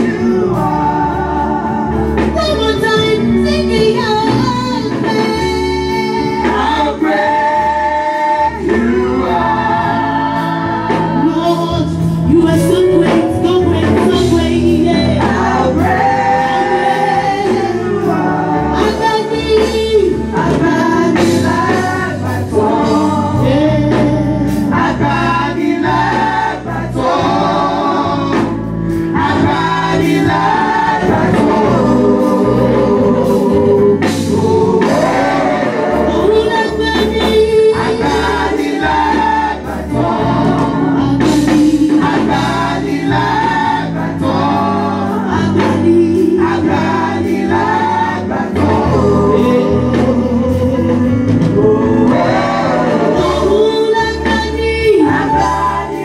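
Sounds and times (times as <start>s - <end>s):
band with bass and drums: 0.0s - 56.0s
choir singing gospel music: 0.0s - 56.0s.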